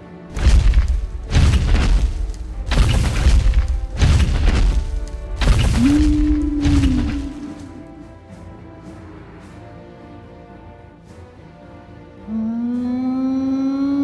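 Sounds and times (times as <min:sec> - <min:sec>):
background music: 0:00.0 - 0:14.0
heavy booming crashes: 0:00.4 - 0:07.6.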